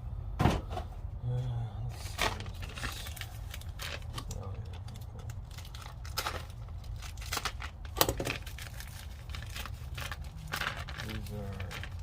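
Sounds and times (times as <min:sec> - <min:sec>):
steady low hum: 0:00.0 - 0:12.0
plastic packaging crinkling: 0:02.0 - 0:12.0.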